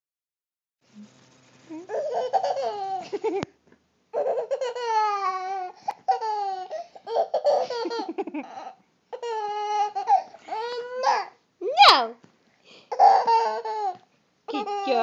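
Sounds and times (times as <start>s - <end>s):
baby laughing: 1.7s - 3.5s, 4.1s - 11.3s, 12.9s - 15.0s.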